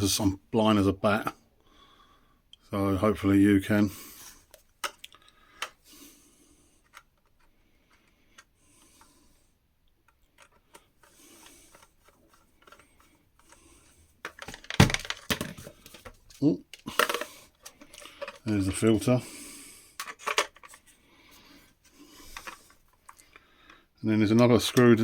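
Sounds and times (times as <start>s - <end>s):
plastic part clattering: 6.8s - 9.1s, 10.0s - 19.1s, 20.0s - 21.0s, 22.2s - 23.4s
clicks and rubbing on plastic: 9.8s - 19.2s.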